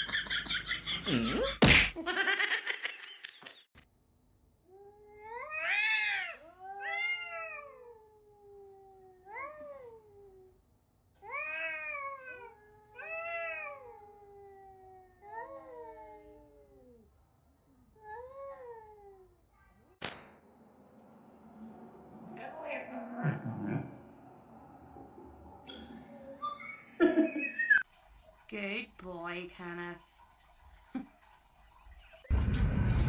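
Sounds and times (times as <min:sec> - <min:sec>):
cat meowing: 0:05.1 - 0:09.8
sharp knock: 0:20.0 - 0:20.8.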